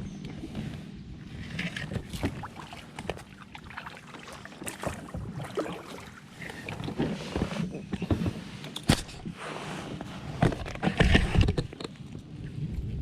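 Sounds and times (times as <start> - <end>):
kayak scraping through branches: 0.5 - 3.4, 6.1 - 11.6.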